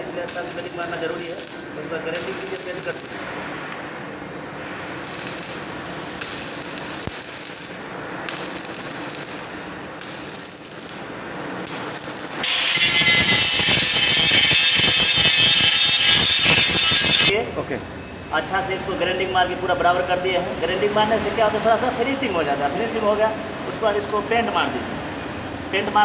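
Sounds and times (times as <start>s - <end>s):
arc welding crackling: 0.0s - 4.0s, 4.8s - 17.3s
angle grinder grinding: 0.3s - 3.9s, 4.8s - 17.3s.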